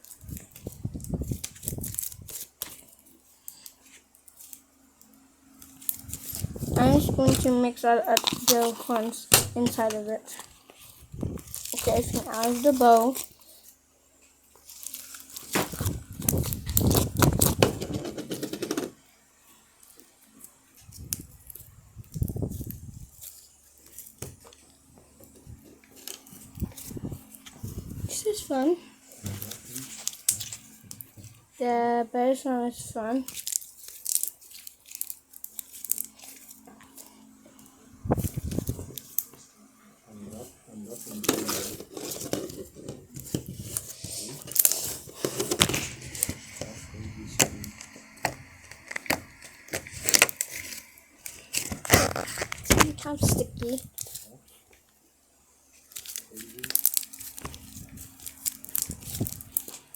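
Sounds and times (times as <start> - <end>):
slime squelching: 11.4 - 13.5
slime crackling and clicking: 56.0 - 57.6.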